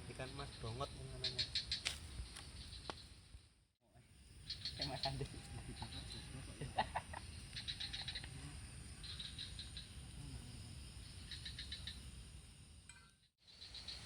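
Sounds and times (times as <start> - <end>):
small animal chirping: 7.5 - 8.4.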